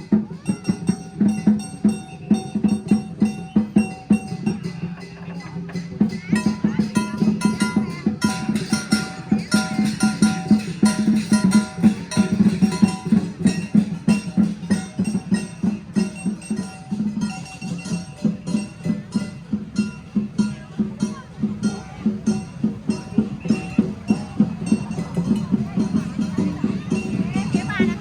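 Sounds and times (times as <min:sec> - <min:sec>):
drum beaten in fast strokes: 0:00.0 - 0:28.0
high melody notes: 0:06.4 - 0:28.0.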